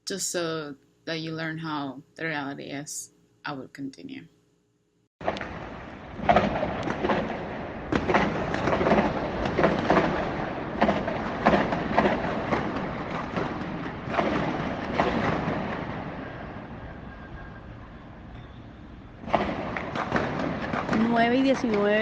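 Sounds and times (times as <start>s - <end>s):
detonations with rolling echo: 5.2s - 22.0s.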